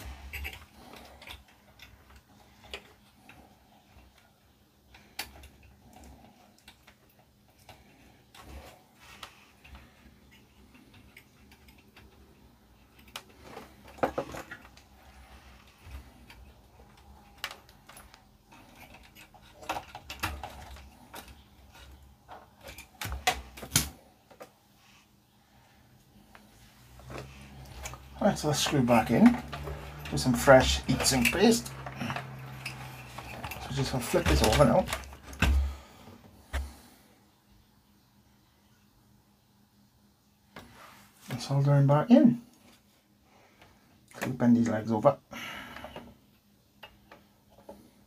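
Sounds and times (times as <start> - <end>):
small parts and tools clicking: 0.0 - 24.5, 27.0 - 35.7.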